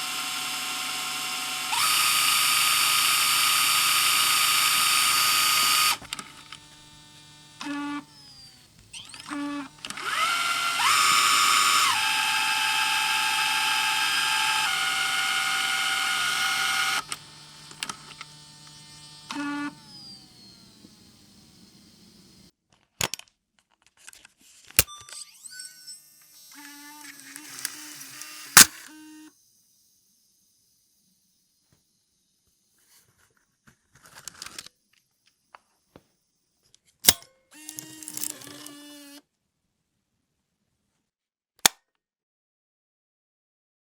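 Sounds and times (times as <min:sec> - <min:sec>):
camcorder motor whirring: 0:00.0 - 0:22.5, 0:24.8 - 0:29.3, 0:37.1 - 0:39.2
small mechanical clicks: 0:01.6 - 0:23.3, 0:24.0 - 0:29.0, 0:37.0 - 0:39.2
sharp loud click: 0:27.4 - 0:28.9.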